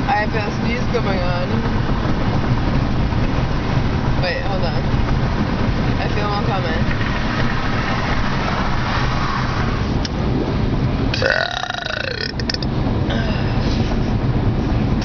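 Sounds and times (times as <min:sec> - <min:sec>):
road rumble inside car: 0:00.0 - 0:15.0
person burping: 0:11.1 - 0:13.4.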